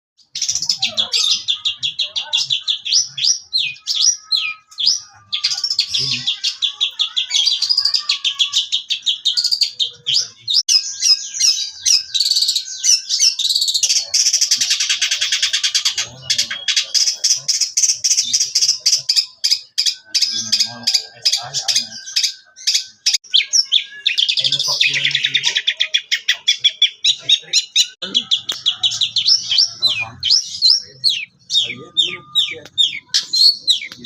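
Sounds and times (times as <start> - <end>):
shrike singing: 0.2 - 34.0.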